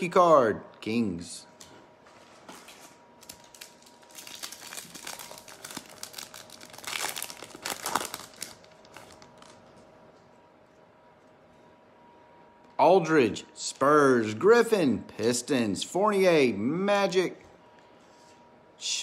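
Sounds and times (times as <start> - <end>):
foil wrapper tearing and crinkling: 3.2 - 9.6.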